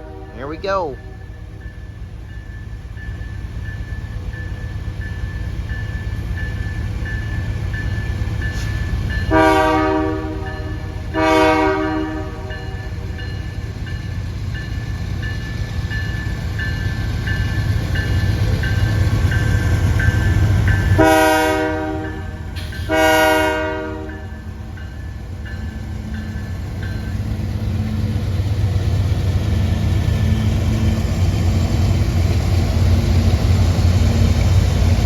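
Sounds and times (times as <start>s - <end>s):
locomotive air horn blasts: 0.0s - 1.1s, 9.3s - 12.8s, 21.0s - 24.4s
locomotives rumbling past: 0.0s - 35.0s.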